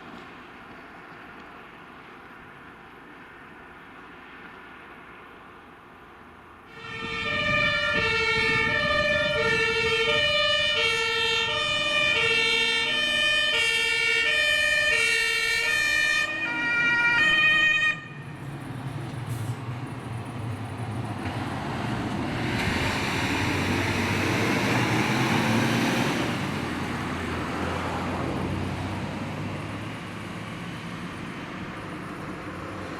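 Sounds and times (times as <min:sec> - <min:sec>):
fire trucks rumbling past: 0:00.0 - 0:32.9
fire engine two-tone siren: 0:06.7 - 0:18.6.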